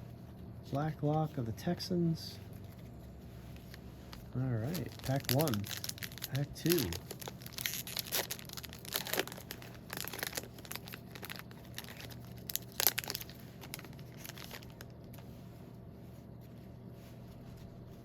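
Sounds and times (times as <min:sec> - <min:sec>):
wrapper tearing and crinkling: 0:04.6 - 0:15.2.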